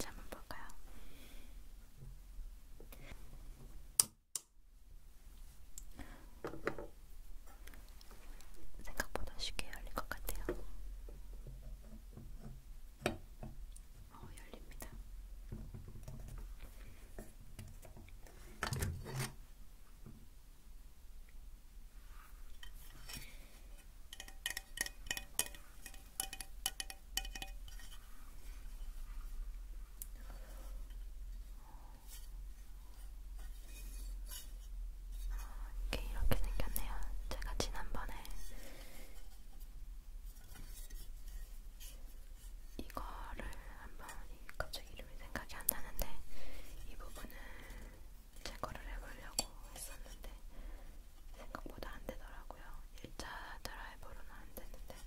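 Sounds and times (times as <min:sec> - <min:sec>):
faint handling sounds: 0:21.9 - 0:44.8.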